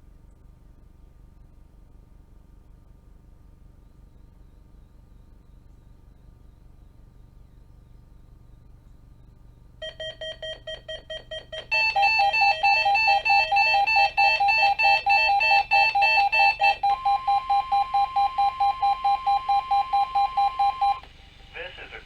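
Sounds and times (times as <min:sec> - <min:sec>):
steady warning alarm tone: 0:09.8 - 0:22.0
weather radio alarm beeps: 0:09.8 - 0:22.0.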